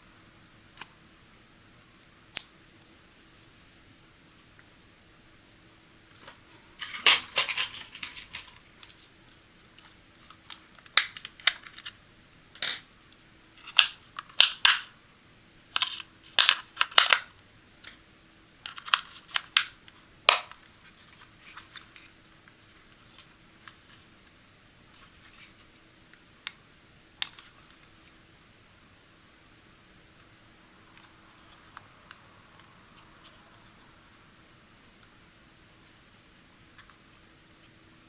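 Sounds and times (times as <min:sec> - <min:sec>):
packaging crinkles: 0:06.2 - 0:09.0.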